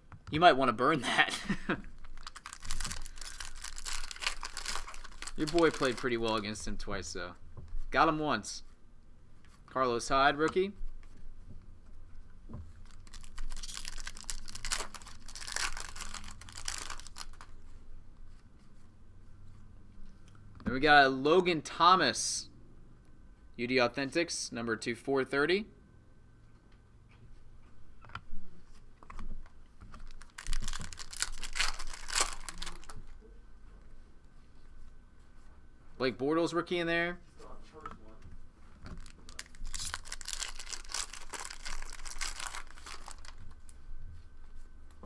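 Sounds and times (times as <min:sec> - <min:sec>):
wrapper tearing and crinkling: 0:01.9 - 0:06.4, 0:12.8 - 0:17.6, 0:30.0 - 0:33.0, 0:38.9 - 0:43.7.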